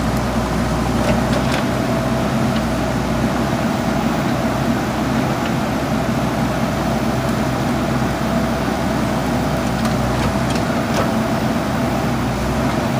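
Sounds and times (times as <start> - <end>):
diesel engine running: 0.0 - 12.9.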